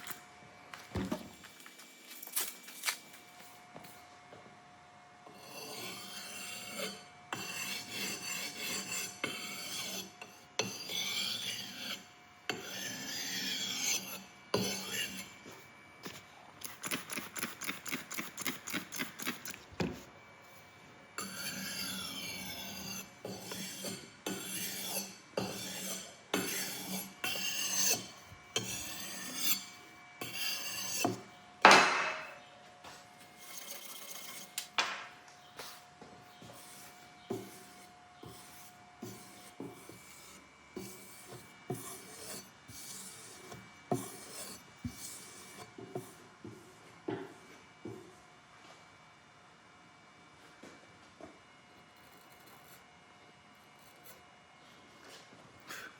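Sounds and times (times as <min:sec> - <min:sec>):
hand file rasping on wood: 0:05.4 - 0:15.3, 0:21.2 - 0:31.2.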